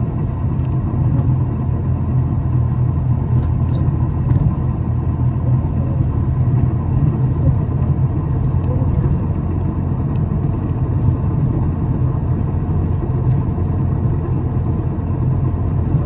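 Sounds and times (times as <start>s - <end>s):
bus engine and road rumble: 0.0s - 16.0s.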